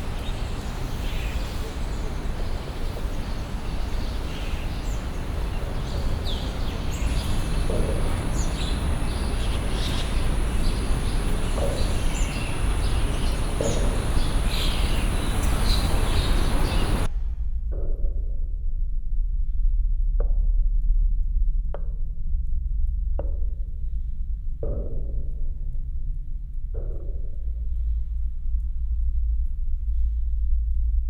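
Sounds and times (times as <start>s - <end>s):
small birds chirping: 0.0s - 17.1s
background noise wash: 0.0s - 17.4s
low rumble: 2.0s - 21.6s
thin high steady tone: 5.3s - 17.1s.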